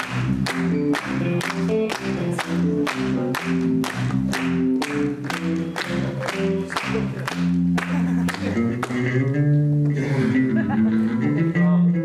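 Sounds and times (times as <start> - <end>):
lounge jazz band playing: 0.4 - 12.0.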